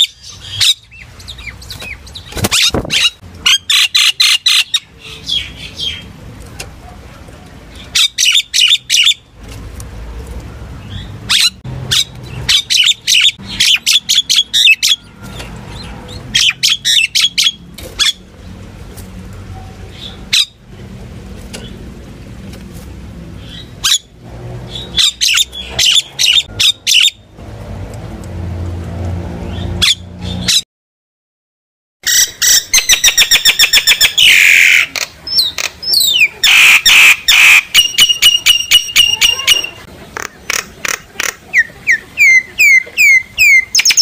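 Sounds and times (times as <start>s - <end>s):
myna chattering and whistling: 32.8s - 44.0s.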